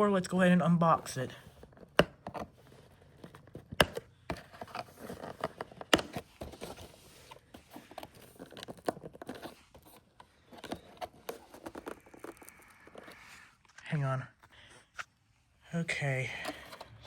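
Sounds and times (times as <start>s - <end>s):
cardboard box being opened: 1.0s - 13.8s
packaging tearing and rustling: 1.6s - 13.8s.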